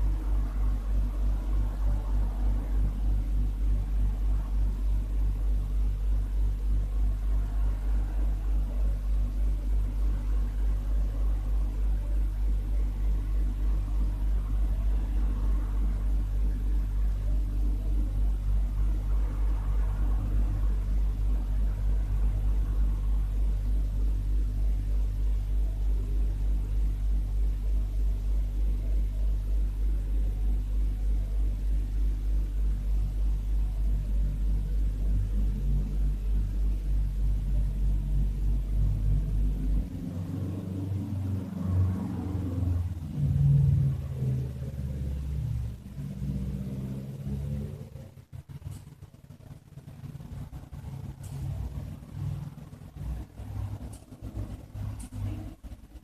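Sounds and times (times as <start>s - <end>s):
microwave oven humming: 0.0s - 56.0s.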